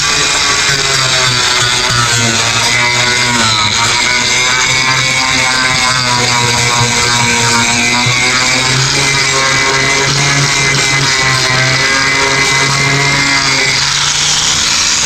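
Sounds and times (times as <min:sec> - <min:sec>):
guitar music: 0:00.0 - 0:13.9.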